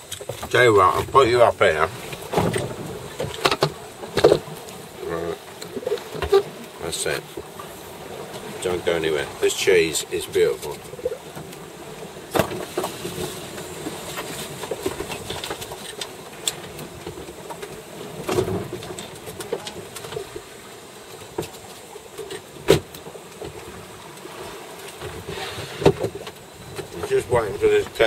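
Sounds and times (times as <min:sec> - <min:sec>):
galley gear clicks and knocks: 0:02.1 - 0:04.5, 0:14.1 - 0:20.4.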